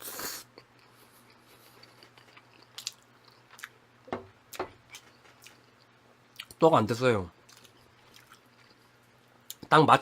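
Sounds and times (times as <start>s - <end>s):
chewing noodles: 0.0s - 3.8s, 4.8s - 6.6s, 7.4s - 9.6s.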